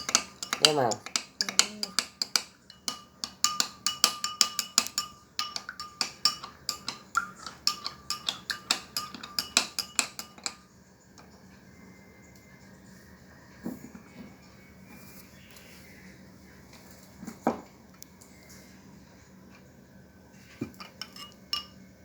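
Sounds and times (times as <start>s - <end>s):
spoon clinking against glass: 0.0s - 10.6s, 20.8s - 21.8s.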